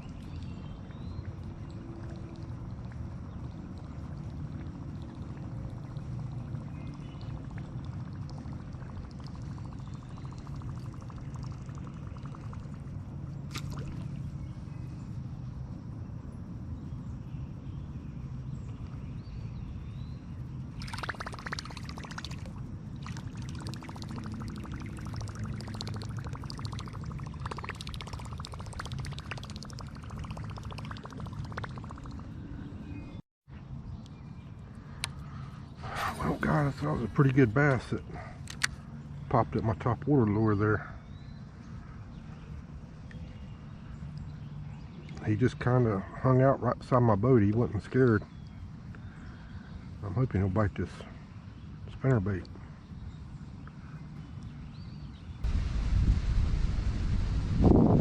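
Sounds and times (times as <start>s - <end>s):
water splashing: 2.0s - 14.3s, 20.8s - 32.3s
wind rumble on microphone: 51.6s - 58.0s.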